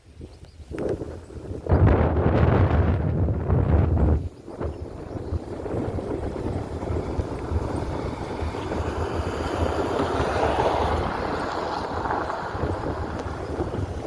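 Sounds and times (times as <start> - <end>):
wind buffeting microphone: 0.0 - 14.0
sea waves: 5.4 - 14.0.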